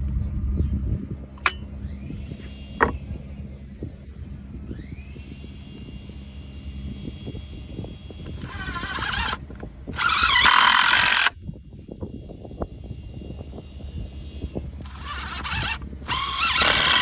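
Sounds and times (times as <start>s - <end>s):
power drill driving screws: 8.2s - 11.4s, 14.8s - 17.0s.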